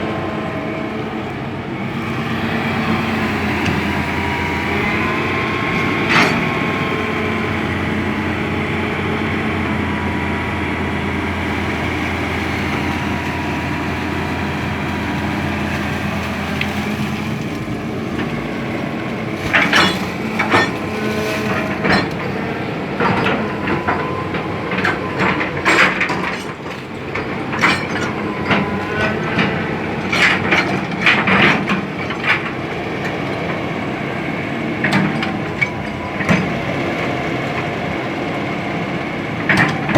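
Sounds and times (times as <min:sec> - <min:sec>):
excavator diesel engine running: 0:00.0 - 0:39.9
machine clanks and knocks: 0:19.4 - 0:33.3, 0:34.8 - 0:37.7, 0:39.4 - 0:39.9.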